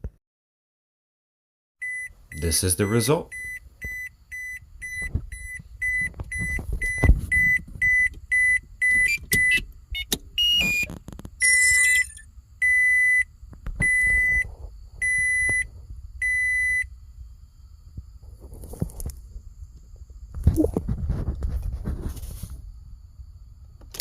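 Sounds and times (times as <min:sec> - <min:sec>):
warning chime beeping: 0:01.8 - 0:13.2.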